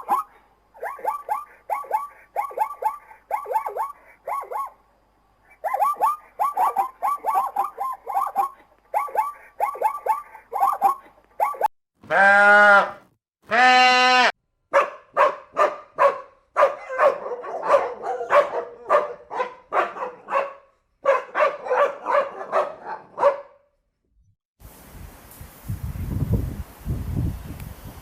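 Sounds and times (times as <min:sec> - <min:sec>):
animal calling: 0:00.0 - 0:04.8, 0:05.5 - 0:14.3.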